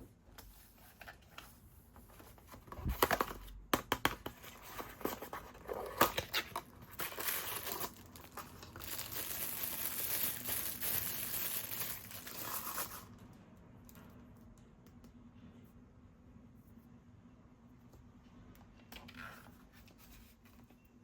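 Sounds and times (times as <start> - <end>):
plastic packaging crinkling and tearing: 4.7 - 13.2.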